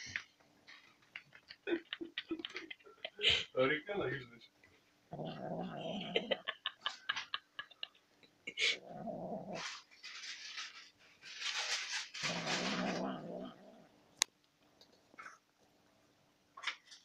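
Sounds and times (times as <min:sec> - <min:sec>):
cat growling: 0:05.1 - 0:06.6, 0:08.6 - 0:09.9, 0:11.8 - 0:14.0.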